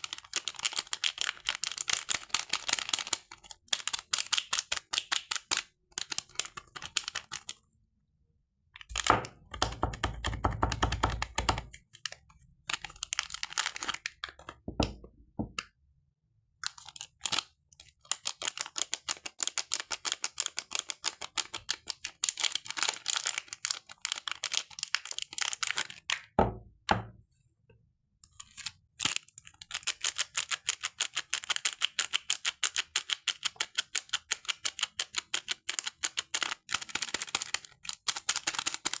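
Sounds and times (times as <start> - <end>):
dry soap crackling: 8.8 - 14.6, 16.6 - 26.3.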